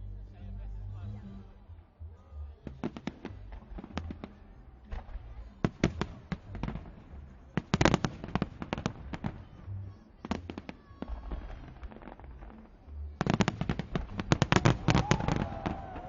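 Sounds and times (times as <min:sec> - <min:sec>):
fireworks crackling pops: 0:02.8 - 0:09.6, 0:10.3 - 0:16.0
fireworks booms: 0:10.3 - 0:16.0.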